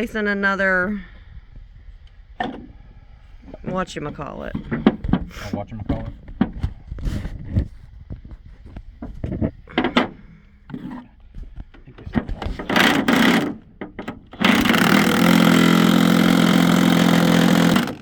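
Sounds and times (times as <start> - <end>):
metal knocks and clicks: 11.6 - 14.7
motor humming: 14.3 - 18.0.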